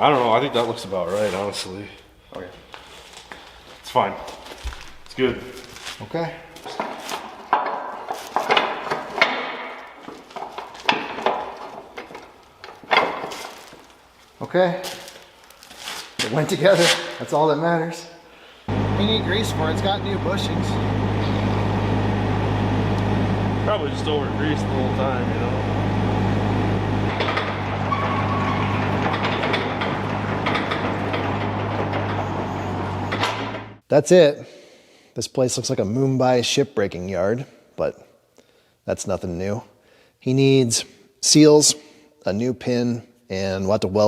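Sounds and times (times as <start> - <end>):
steady low hum: 18.7 - 33.8.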